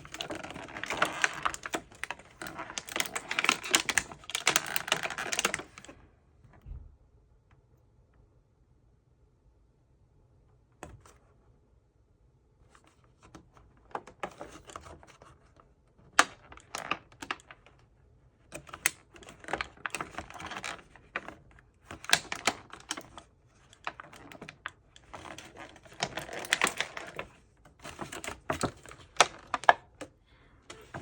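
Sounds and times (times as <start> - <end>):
plastic packaging crackling: 0.0 - 5.9, 19.1 - 30.0, 30.7 - 31.0.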